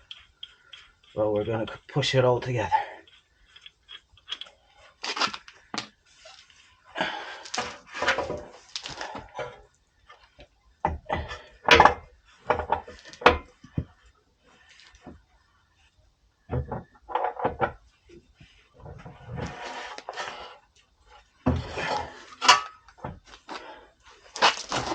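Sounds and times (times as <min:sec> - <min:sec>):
metal knocks clunks and scrapes: 0:07.6 - 0:14.0, 0:16.4 - 0:23.7.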